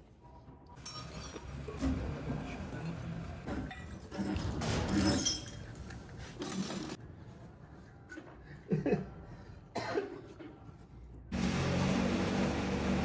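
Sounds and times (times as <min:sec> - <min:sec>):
metal tools clinking: 0:00.8 - 0:01.5, 0:03.7 - 0:07.0.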